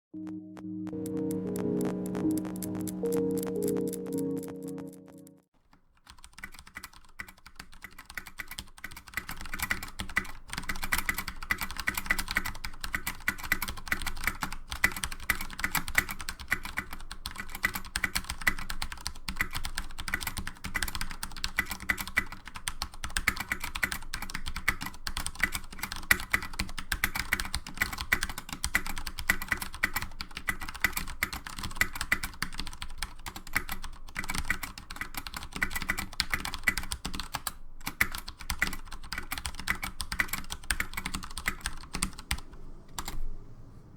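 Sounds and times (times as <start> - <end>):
mechanical keyboard typing: 6.0 - 43.2.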